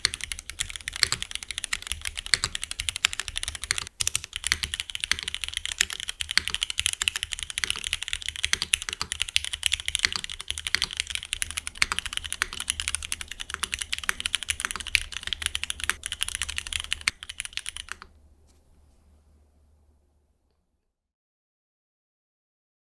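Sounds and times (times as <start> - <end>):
fast mechanical keyboard typing: 0.0 - 18.1.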